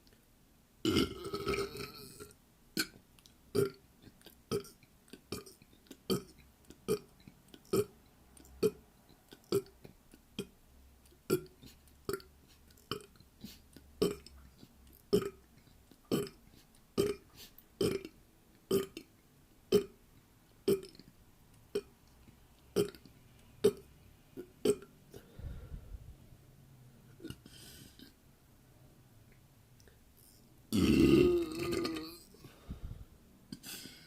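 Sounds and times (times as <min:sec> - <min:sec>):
person burping: 0:00.8 - 0:03.8, 0:04.5 - 0:07.9, 0:09.4 - 0:09.7, 0:11.3 - 0:13.1, 0:14.0 - 0:14.4, 0:15.1 - 0:15.4, 0:16.0 - 0:16.4, 0:17.0 - 0:19.1, 0:19.7 - 0:20.0, 0:20.6 - 0:21.0, 0:22.8 - 0:24.9, 0:30.7 - 0:32.4, 0:33.5 - 0:34.0.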